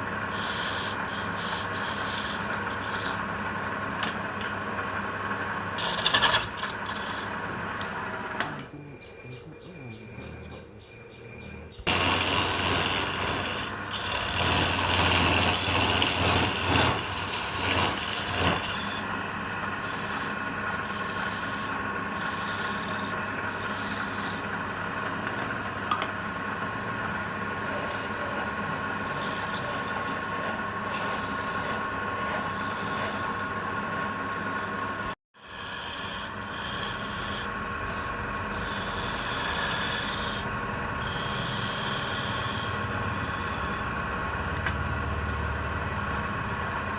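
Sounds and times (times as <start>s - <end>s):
wood being sanded: 0.0s - 3.3s, 11.9s - 19.2s, 19.8s - 24.6s, 27.6s - 43.9s.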